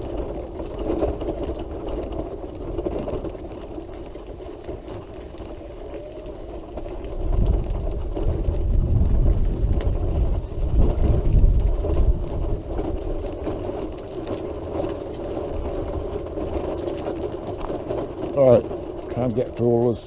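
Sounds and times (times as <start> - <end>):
low rumble of wheels: 0.0 - 20.0
wheelchair humming: 0.0 - 20.0.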